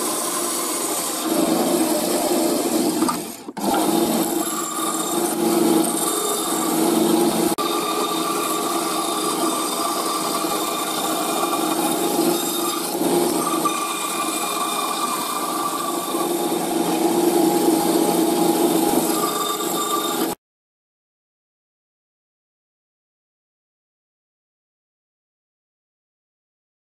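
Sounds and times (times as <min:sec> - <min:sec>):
power tool working wood: 0:00.0 - 0:20.4.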